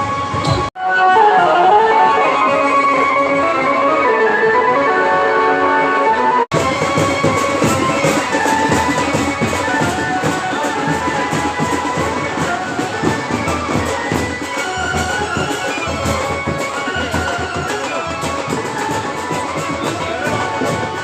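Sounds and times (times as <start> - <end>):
instrumental music with drums: 0.0 - 4.8, 6.5 - 21.0.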